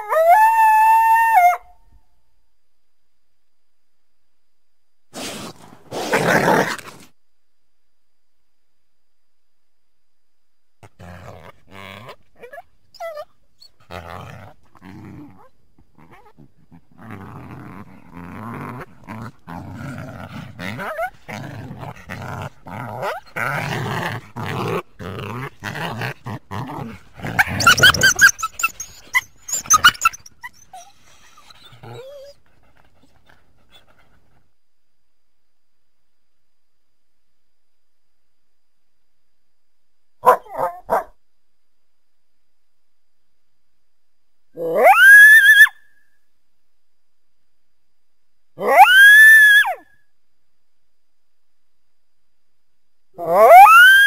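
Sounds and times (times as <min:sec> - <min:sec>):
coyote growling and snarling: 0:05.2 - 0:07.1, 0:10.8 - 0:34.4, 0:53.2 - 0:54.0
coyote yelps and barks: 0:20.6 - 0:21.4, 0:27.2 - 0:32.3, 0:40.2 - 0:41.1, 0:44.6 - 0:46.0, 0:48.6 - 0:49.9, 0:53.2 - 0:54.0.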